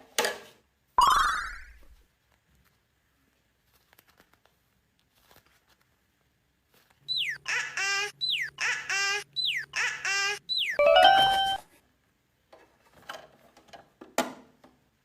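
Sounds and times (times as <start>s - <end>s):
falling whistle: 10.5s - 11.6s
warbling electronic tone: 10.5s - 11.6s
bright ringing chime: 10.8s - 11.6s.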